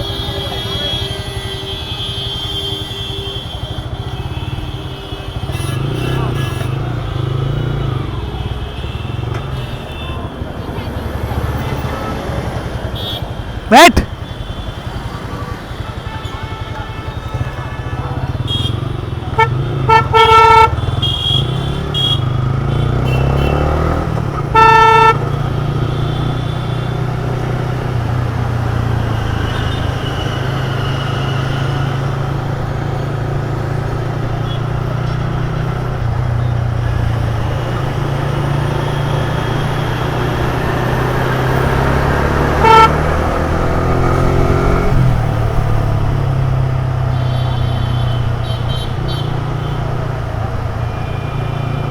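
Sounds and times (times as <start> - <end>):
vehicle horn honking: 0.0 - 10.4, 11.5 - 27.5, 37.5 - 44.8, 47.0 - 49.9
motorcycle engine and road rumble: 0.0 - 51.9.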